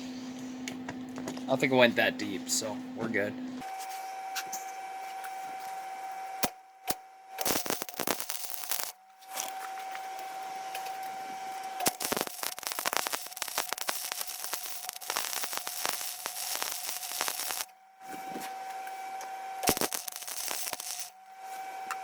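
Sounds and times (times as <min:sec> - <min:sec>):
welding arc crackling and hissing: 0:06.4 - 0:09.0, 0:11.8 - 0:17.7, 0:19.6 - 0:21.2.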